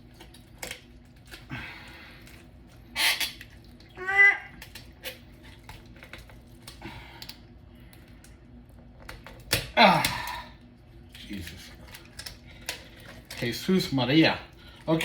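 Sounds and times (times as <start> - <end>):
person groaning: 9.8 - 10.5
person grunting: 9.8 - 10.5.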